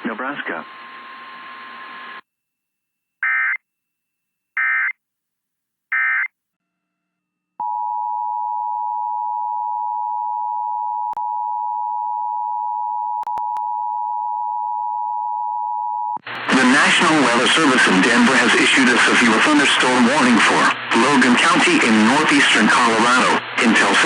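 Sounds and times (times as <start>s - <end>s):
loud steady alert tone: 5.9s - 6.3s.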